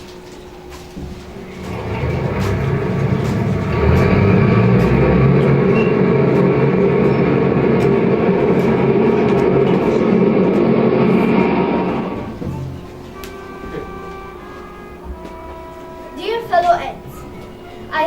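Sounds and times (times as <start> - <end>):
heavy machinery rumble: 0.0 - 13.7.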